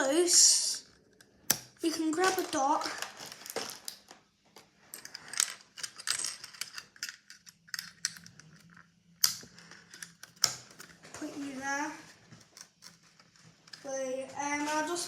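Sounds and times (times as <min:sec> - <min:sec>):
plastic pieces clicking and rattling: 0:00.4 - 0:04.2, 0:04.9 - 0:11.0
plastic pieces snapping: 0:00.6 - 0:04.2, 0:05.0 - 0:11.0.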